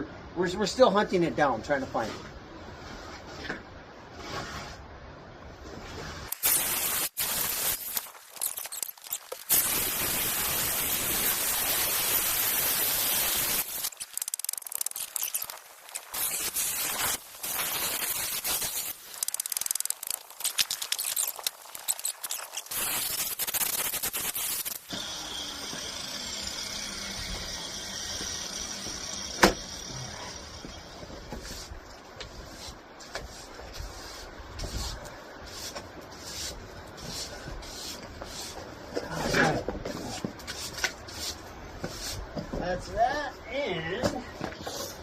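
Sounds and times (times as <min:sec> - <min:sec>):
power saw cutting concrete: 0:24.9 - 0:30.6.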